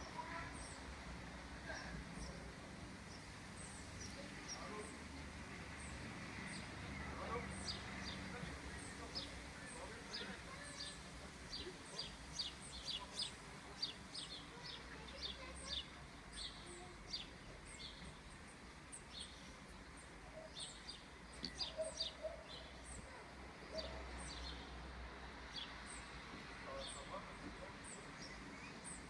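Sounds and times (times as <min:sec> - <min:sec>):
birds chirping: 0:00.0 - 0:00.9, 0:01.6 - 0:29.0
faint outdoor background noise: 0:00.0 - 0:29.0.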